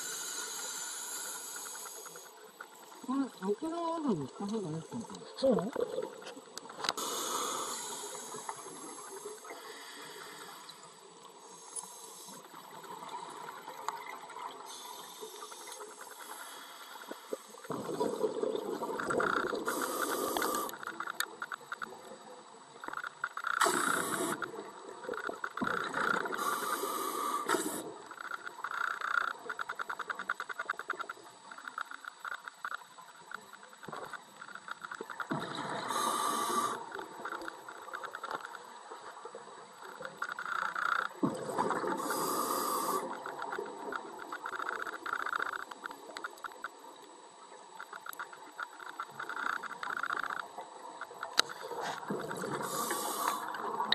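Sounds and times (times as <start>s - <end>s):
regulator inhalation hiss: 0.0s - 3.0s, 7.0s - 12.6s, 14.6s - 17.6s, 19.6s - 20.9s, 23.5s - 25.2s, 25.9s - 28.0s, 35.8s - 37.0s, 41.9s - 43.4s, 51.6s - 53.8s
exhaled bubbles gushing: 41.2s - 42.0s.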